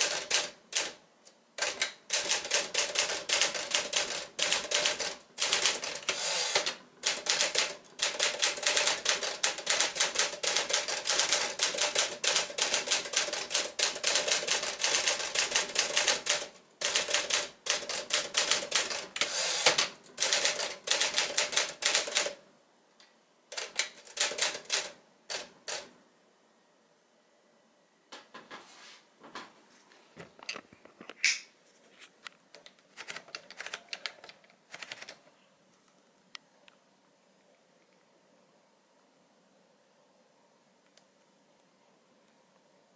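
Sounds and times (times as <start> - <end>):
manual typewriter keystrokes: 0.0 - 1.0, 1.6 - 22.4, 23.5 - 25.9, 32.6 - 35.2.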